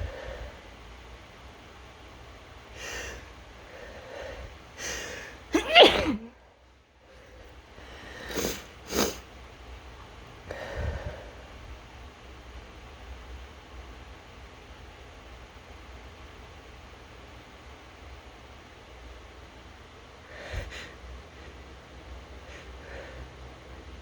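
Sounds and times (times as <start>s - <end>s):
person sneezing: 5.5s - 6.3s, 8.3s - 9.2s
sharp breaths: 7.2s - 9.2s.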